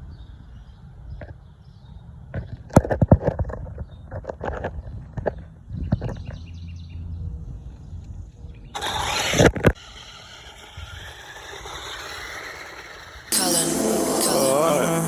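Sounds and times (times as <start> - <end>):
toy car motor whirring: 8.8 - 14.8.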